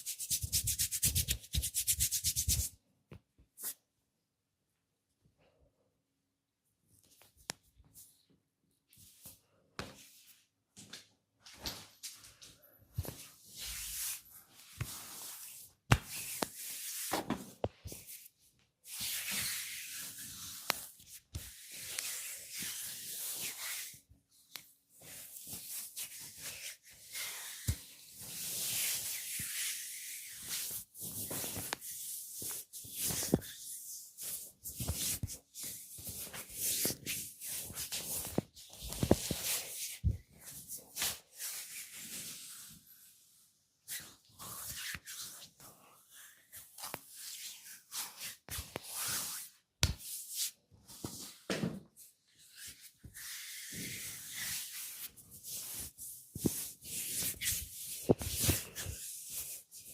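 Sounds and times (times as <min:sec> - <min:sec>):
hands rubbing oiled skin: 0:00.0 - 0:02.7.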